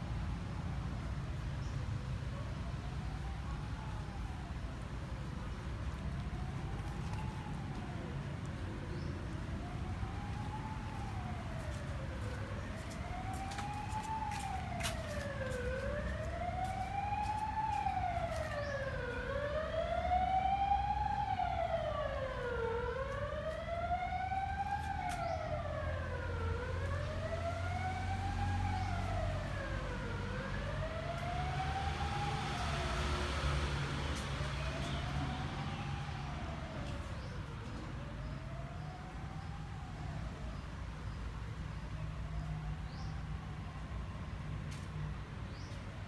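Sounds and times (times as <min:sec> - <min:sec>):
low rumble of traffic: 0:00.0 - 0:46.0
siren wailing: 0:09.6 - 0:39.3.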